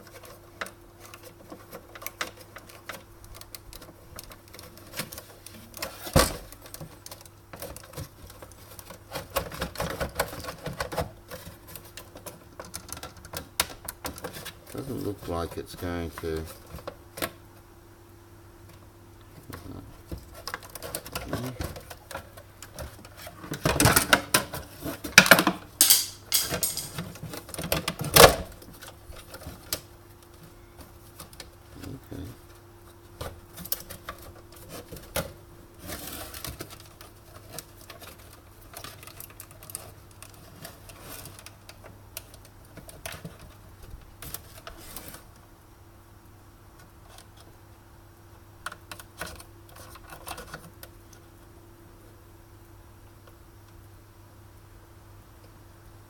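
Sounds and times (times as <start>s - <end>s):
faint steady hum: 0.0s - 56.0s
knocking and rattling: 25.1s - 28.3s
hand tools tapping on machine parts: 25.2s - 27.0s.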